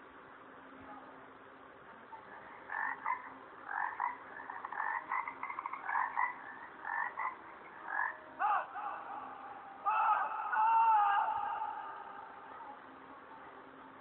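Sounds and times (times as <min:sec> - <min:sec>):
frog croaking: 0:02.2 - 0:12.5.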